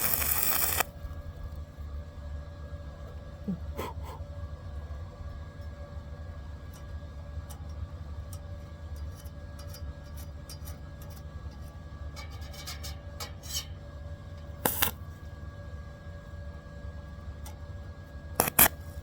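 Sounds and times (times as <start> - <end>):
welding clicks and crackles: 0.0 - 1.6, 14.6 - 15.0, 18.4 - 19.0
welding set humming: 0.0 - 2.4, 14.3 - 15.4, 17.4 - 19.0.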